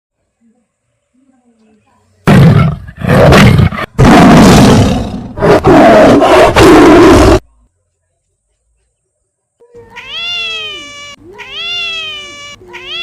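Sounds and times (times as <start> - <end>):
tiger roaring and growling: 2.3 - 7.4.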